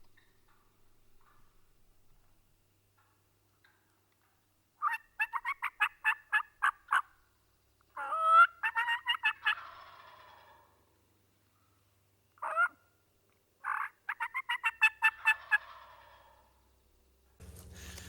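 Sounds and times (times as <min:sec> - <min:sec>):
turkey gobble: 0:04.8 - 0:07.1, 0:08.0 - 0:10.9, 0:12.4 - 0:12.8, 0:13.6 - 0:16.6
turkey yelps: 0:04.8 - 0:07.1, 0:08.0 - 0:10.7, 0:12.4 - 0:12.8, 0:13.6 - 0:16.5.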